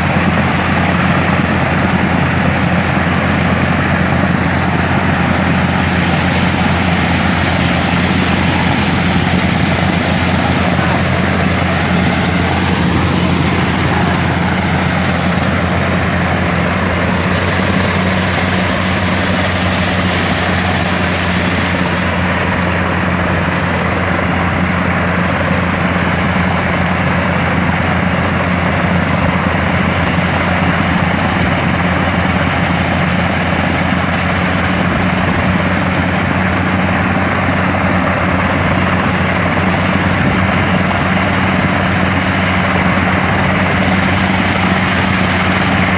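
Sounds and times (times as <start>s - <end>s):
drilling machine engine running: 0.0s - 45.9s.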